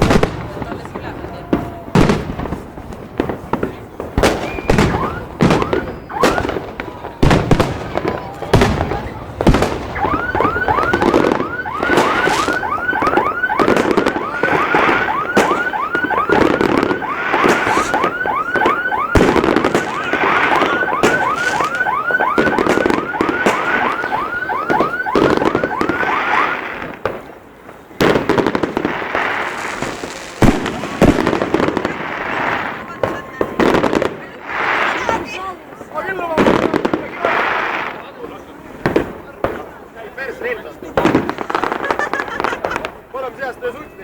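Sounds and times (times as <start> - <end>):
fireworks crackling and banging: 0.0 - 44.0
car alarm whooping: 4.4 - 7.4, 8.8 - 26.8.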